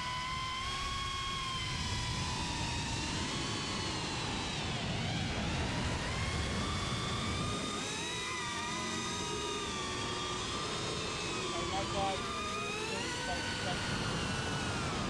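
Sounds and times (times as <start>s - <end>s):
drone propellers whining: 5.2s - 15.0s.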